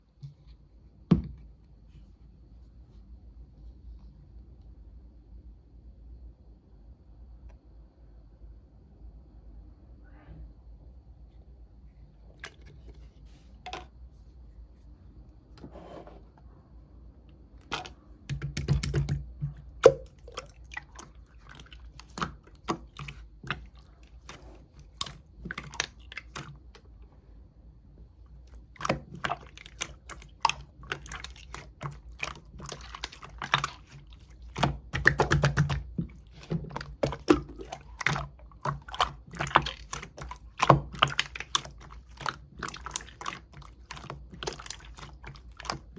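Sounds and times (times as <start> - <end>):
slime squishes: 17.6 - 27.1, 28.2 - 45.9
slime clicking and popping: 28.8 - 45.8.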